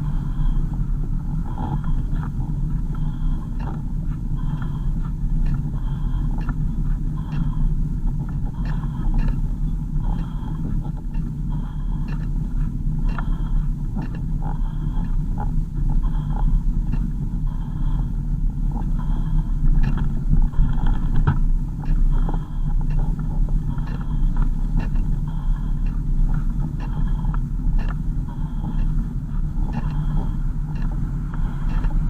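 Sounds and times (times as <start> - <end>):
car engine and road rumble: 0.0 - 32.0
small rattles and knocks: 19.6 - 25.2.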